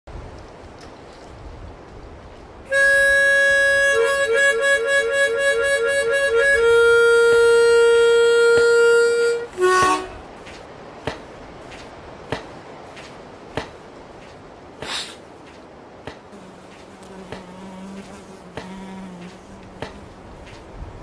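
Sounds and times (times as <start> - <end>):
harmonica playing: 2.7 - 10.2.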